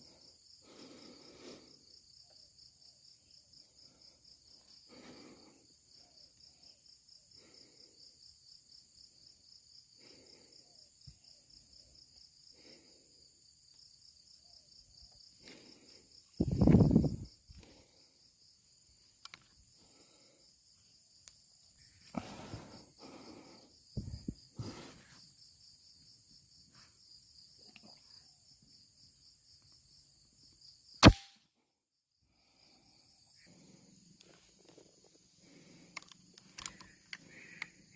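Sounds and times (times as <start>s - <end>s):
insects chirring: 0.0s - 37.9s
air rifle shot: 31.0s - 31.4s.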